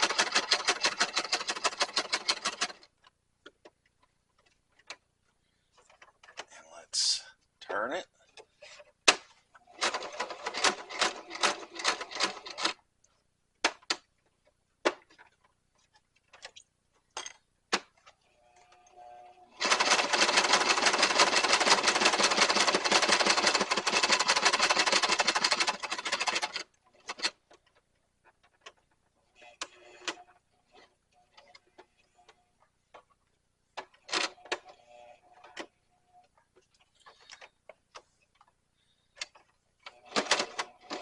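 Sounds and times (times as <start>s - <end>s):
sewing machine stitching leather: 0.0s - 3.0s, 9.7s - 12.8s, 18.2s - 32.0s, 39.2s - 41.0s.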